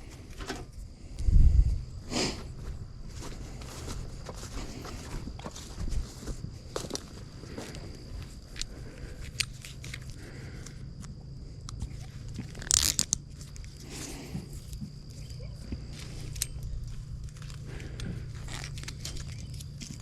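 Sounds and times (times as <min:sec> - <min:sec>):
footsteps crunching on mulch: 0:02.1 - 0:08.5.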